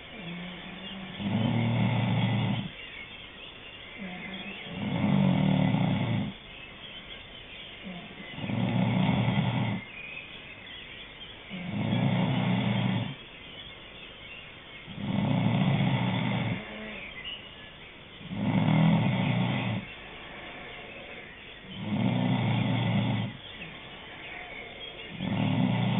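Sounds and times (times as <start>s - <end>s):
person snoring: 0.0s - 2.7s, 4.0s - 6.4s, 7.8s - 9.8s, 11.5s - 13.2s, 14.9s - 17.0s, 18.2s - 19.9s, 21.0s - 23.4s, 25.1s - 25.9s
quiet breathing: 0.0s - 2.9s, 14.9s - 25.9s.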